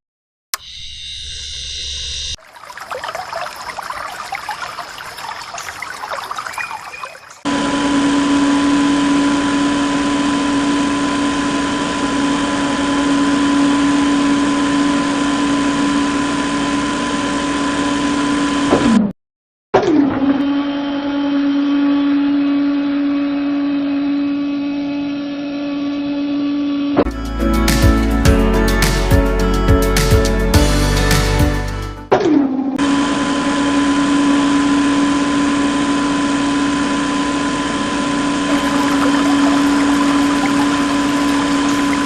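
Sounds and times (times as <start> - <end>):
small motor high-pitched hum: 0.6 - 2.4.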